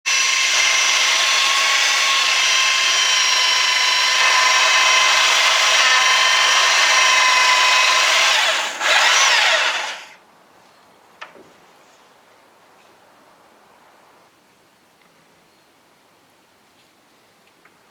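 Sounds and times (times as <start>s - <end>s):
electric power tool whining: 0.0s - 10.2s.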